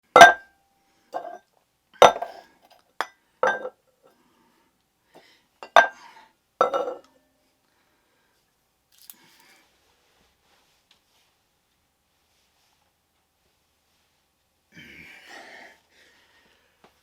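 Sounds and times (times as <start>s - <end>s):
dishware clinking and knocking: 6.6s - 7.0s.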